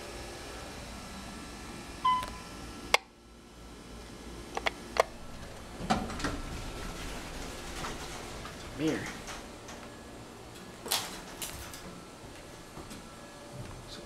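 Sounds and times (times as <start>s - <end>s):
low steady hum: 0.0s - 14.0s
elevator electronic beep: 2.0s - 2.6s.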